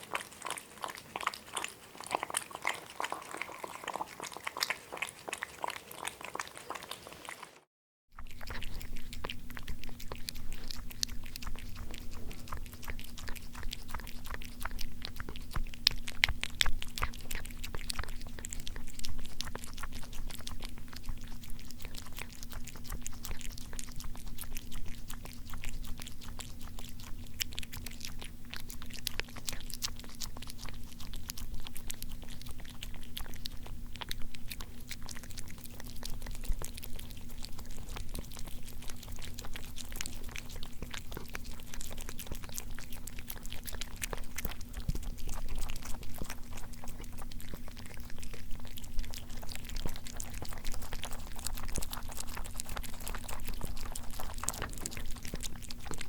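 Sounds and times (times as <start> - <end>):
chewing and crunching: 0.0 - 56.0
steady low hum: 8.2 - 56.0.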